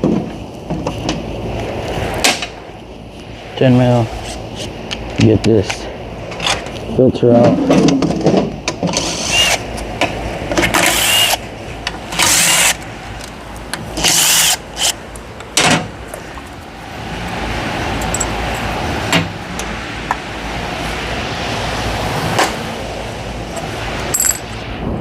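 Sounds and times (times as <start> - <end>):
cordless power tool whirring: 8.9 - 9.6, 10.6 - 11.4, 12.1 - 12.8.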